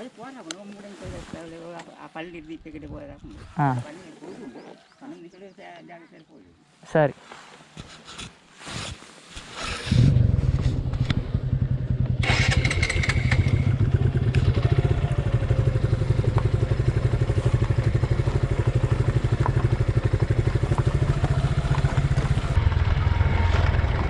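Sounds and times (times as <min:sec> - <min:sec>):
motorcycle engine running: 0:09.8 - 0:24.0.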